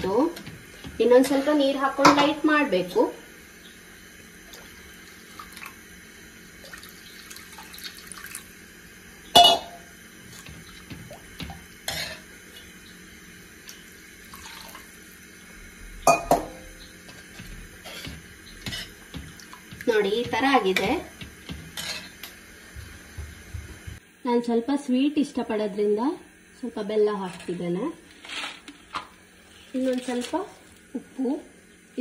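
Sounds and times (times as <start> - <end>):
faint water pouring: 6.6 - 8.5, 13.7 - 15.5.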